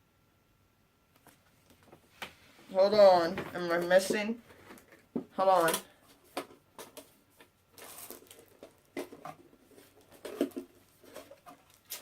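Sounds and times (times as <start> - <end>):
items clicking and knocking: 3.2 - 12.0.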